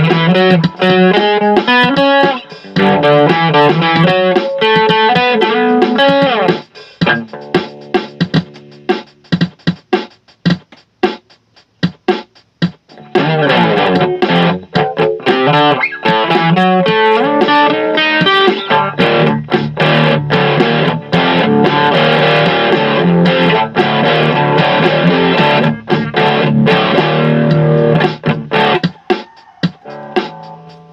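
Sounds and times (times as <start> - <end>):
electric guitar playing: 0.0 - 8.8, 12.9 - 28.9.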